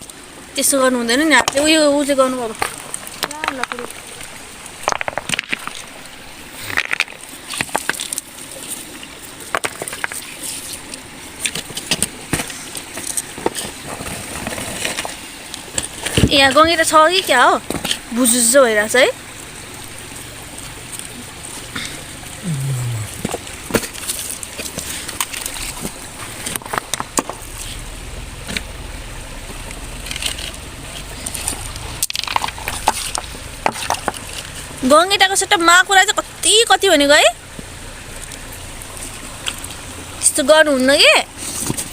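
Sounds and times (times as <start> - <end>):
water splashing and sloshing: 0.0 - 41.9
stones knocking and scraping: 2.5 - 16.4, 23.0 - 27.8, 29.4 - 34.7
low steady rumble: 14.2 - 41.9.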